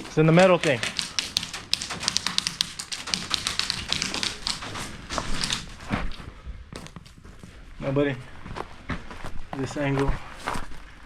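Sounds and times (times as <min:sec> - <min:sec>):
airsoft guns firing: 0:00.0 - 0:05.8.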